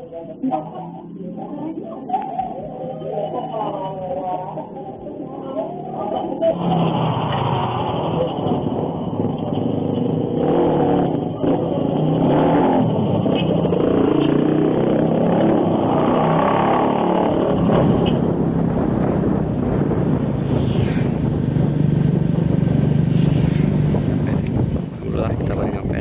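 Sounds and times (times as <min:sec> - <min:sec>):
vehicle engine running: 0:06.6 - 0:26.0.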